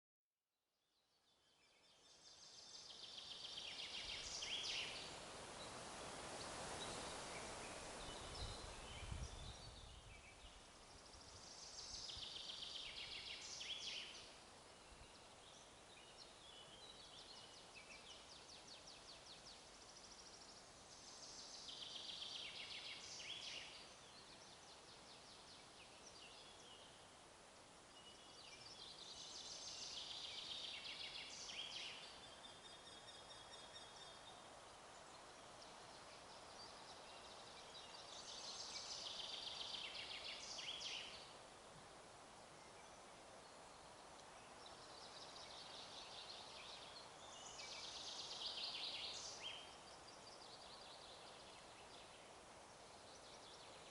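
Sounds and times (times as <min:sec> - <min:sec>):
faint steady hiss: 0:00.8 - 0:53.9
songbirds singing: 0:01.0 - 0:53.9
wind gust: 0:05.0 - 0:10.2.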